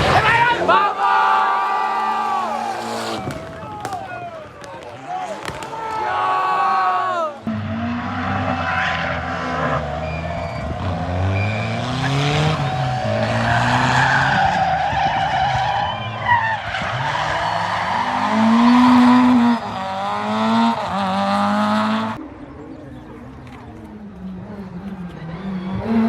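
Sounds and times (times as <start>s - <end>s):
car engine accelerating hard: 0.0s - 5.6s, 7.0s - 26.0s
tyres skidding: 0.0s - 26.0s.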